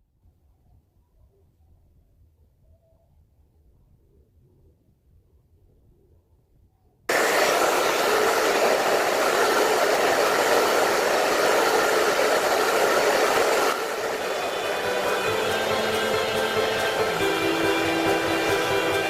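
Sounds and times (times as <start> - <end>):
hair dryer blowing: 7.1 - 19.0.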